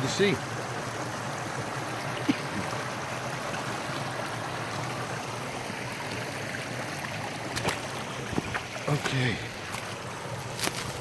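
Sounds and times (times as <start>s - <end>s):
brook water flowing: 0.0s - 11.0s.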